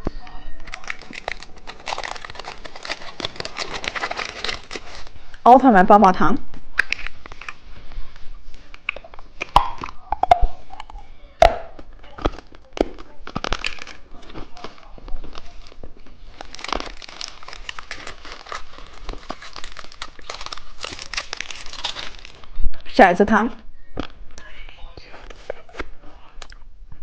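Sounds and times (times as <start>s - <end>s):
plastic packaging crinkling: 0.6s - 5.4s, 11.8s - 22.6s.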